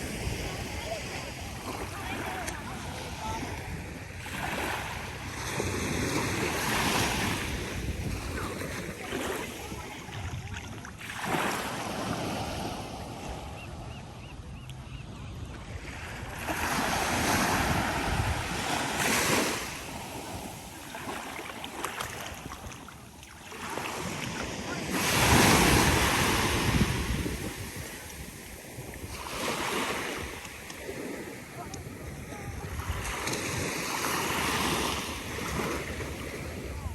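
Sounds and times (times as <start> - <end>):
surf breaking on beach: 23.6 - 30.4
wind buffeting microphone: 25.2 - 29.2.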